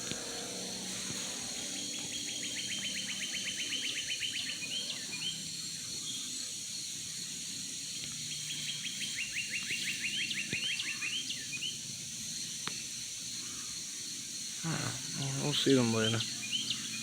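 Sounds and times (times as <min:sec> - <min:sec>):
outdoor background hiss: 0:00.0 - 0:17.0
songbird trilling: 0:01.9 - 0:05.4, 0:15.1 - 0:17.0.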